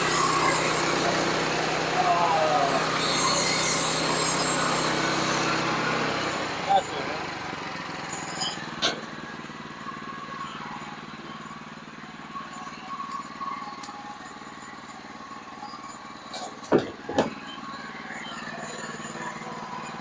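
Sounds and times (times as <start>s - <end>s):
sawmill engine running: 0.0s - 12.3s.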